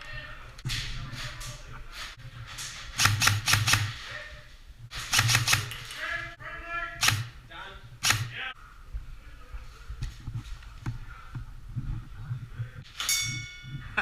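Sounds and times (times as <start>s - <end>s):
airsoft guns firing: 2.9s - 4.0s, 4.9s - 5.9s, 7.0s - 7.3s, 8.0s - 8.4s.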